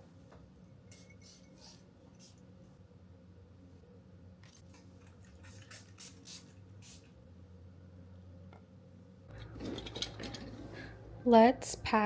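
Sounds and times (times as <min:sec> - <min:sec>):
low steady hum: 0:00.0 - 0:12.0
faint brushing sounds: 0:00.9 - 0:02.8.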